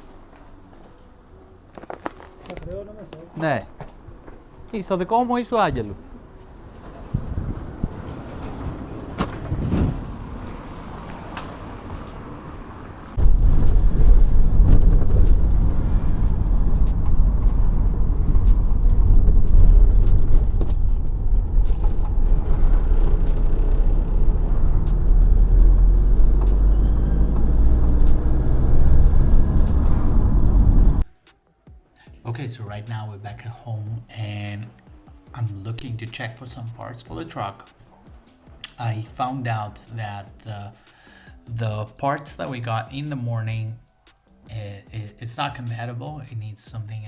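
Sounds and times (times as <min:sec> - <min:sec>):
road and engine rumble: 0:00.0 - 0:31.1.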